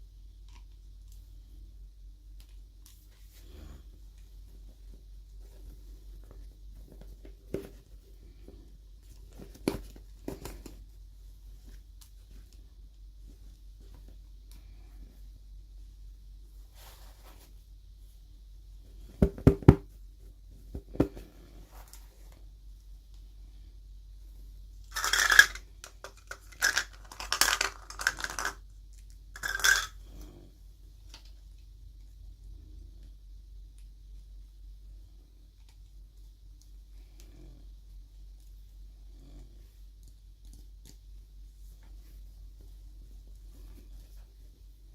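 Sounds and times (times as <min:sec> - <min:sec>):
low steady hum: 0:00.0 - 0:44.9
toy parts clicking and tapping: 0:24.8 - 0:30.0
plastic packaging crinkling: 0:24.9 - 0:28.6, 0:29.4 - 0:29.9.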